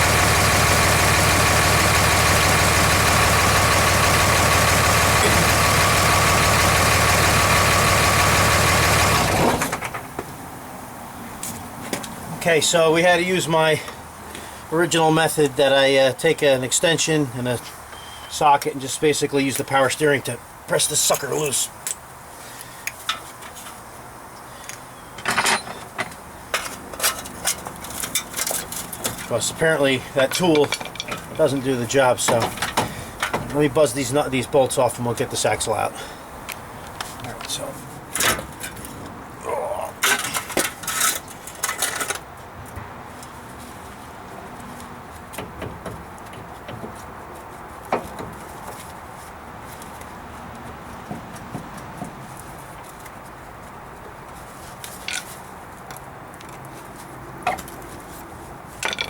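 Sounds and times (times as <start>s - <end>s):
idling engine hum: 0.0s - 11.2s
steel parts clattering rattle: 25.2s - 29.4s, 30.2s - 31.5s, 40.0s - 42.2s, 58.8s - 59.0s
metal tools clanking: 25.2s - 33.8s, 37.2s - 38.9s, 40.0s - 42.2s, 58.8s - 59.0s
taps and clicks of tool handling: 30.3s - 31.4s, 32.2s - 33.6s, 58.8s - 59.0s.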